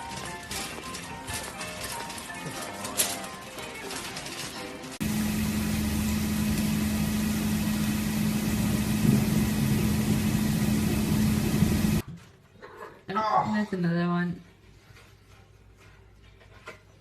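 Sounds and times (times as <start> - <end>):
mechanical hum: 0.0 - 12.2.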